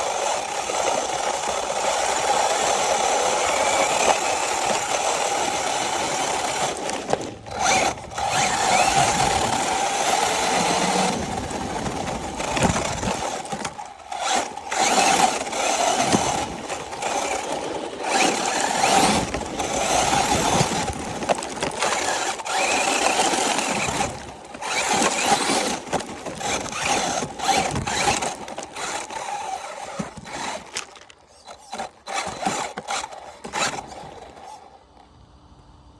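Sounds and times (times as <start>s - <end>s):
toy car electric motor whining: 0.0s - 35.0s.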